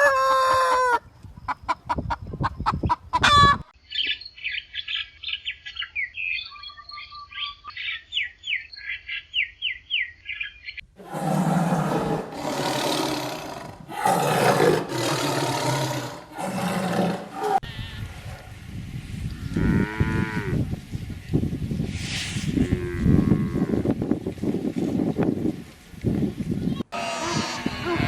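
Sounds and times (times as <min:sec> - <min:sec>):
cattle mooing: 0:27.0 - 0:28.0.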